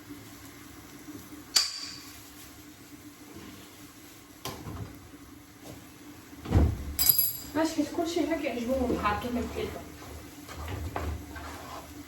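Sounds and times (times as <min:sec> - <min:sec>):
utensil clinking on cookware: 0:07.0 - 0:07.6
utensil knocking and scraping: 0:10.5 - 0:11.9.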